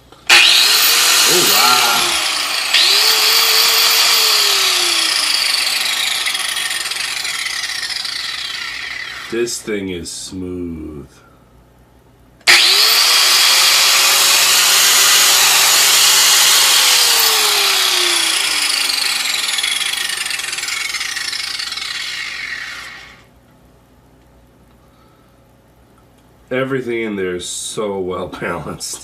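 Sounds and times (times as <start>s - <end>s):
angle grinder whining: 0.2s - 9.4s, 12.4s - 23.3s.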